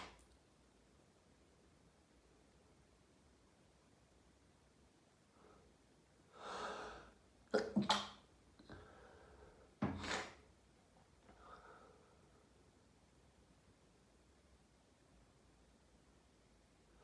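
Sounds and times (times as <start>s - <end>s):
person sneezing: 9.8s - 10.4s.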